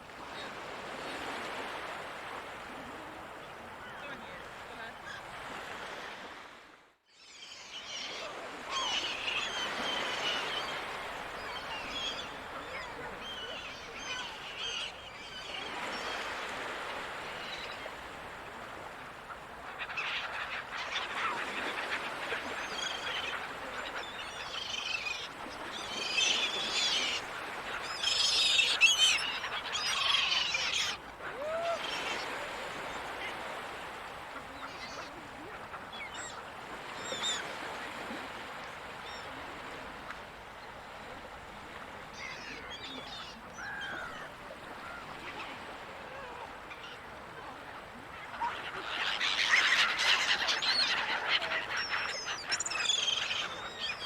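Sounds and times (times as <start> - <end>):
sea rushing: 0.0 - 6.8, 7.8 - 54.0
gulls calling: 7.4 - 38.1, 41.7 - 54.0.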